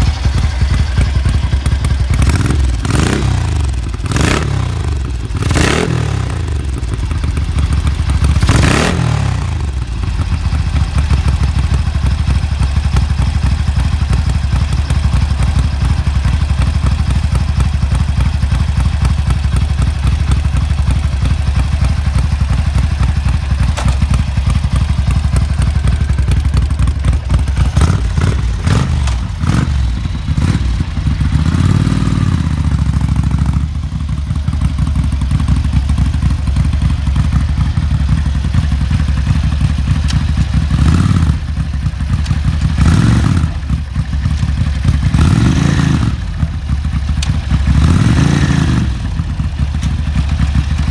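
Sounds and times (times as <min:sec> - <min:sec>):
motorcycle engine idling: 0:00.0 - 0:50.9
motorcycle throttle blips: 0:18.7 - 0:50.9.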